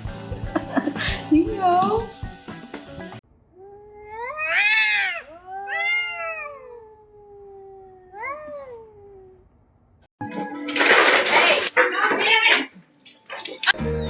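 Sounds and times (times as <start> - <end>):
cat meowing: 3.6 - 9.4.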